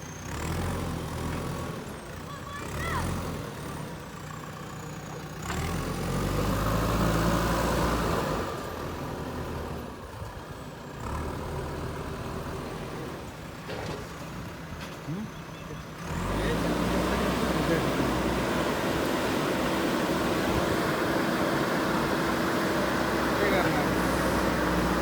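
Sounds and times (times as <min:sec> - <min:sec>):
diesel engine revving: 0:00.0 - 0:25.0.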